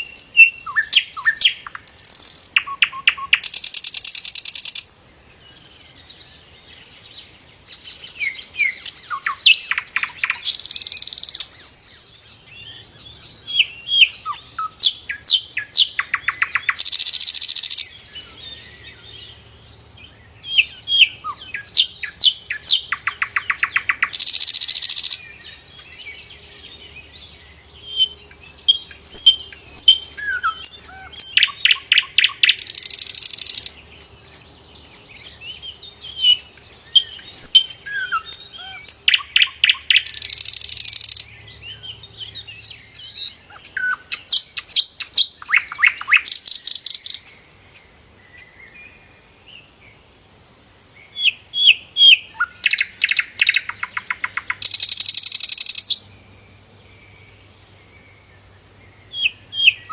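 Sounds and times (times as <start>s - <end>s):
bird chirps and whistled notes: 0.0s - 5.5s, 7.7s - 19.0s, 27.9s - 35.4s, 42.4s - 47.3s, 51.1s - 56.1s.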